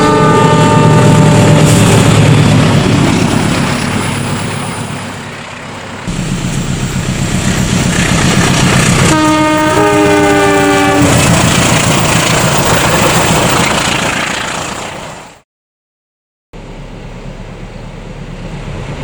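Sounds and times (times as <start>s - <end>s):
train multi-tone air horn: 0.0s - 2.1s, 8.9s - 11.3s
locomotive rumble: 0.0s - 15.4s
train rumble: 0.0s - 15.4s, 16.6s - 19.0s.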